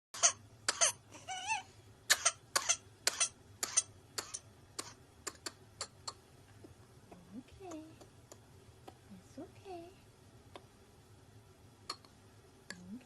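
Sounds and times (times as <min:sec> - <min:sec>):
infant hacking coughs: 0:00.2 - 0:01.0, 0:02.1 - 0:06.0.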